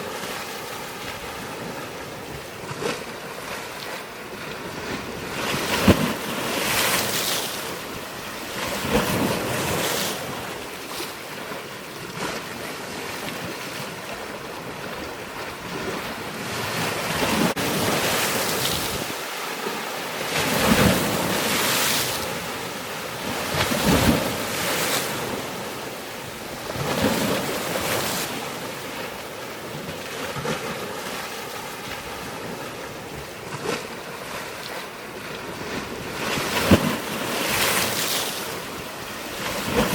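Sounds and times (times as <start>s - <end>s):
water washing in surges: 0.0s - 39.9s
wind on microphone: 12.2s - 19.3s.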